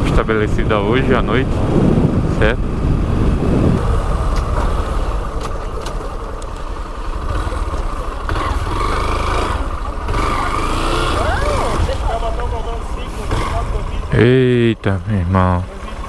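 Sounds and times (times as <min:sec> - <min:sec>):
motorcycle engine running: 0:00.0 - 0:16.0
road noise: 0:00.0 - 0:16.0.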